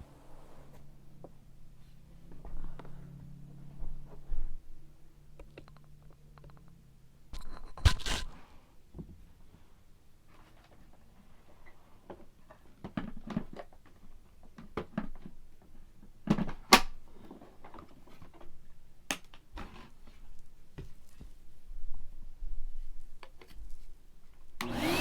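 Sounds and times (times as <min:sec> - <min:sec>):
objects being handled: 0:07.4 - 0:08.4.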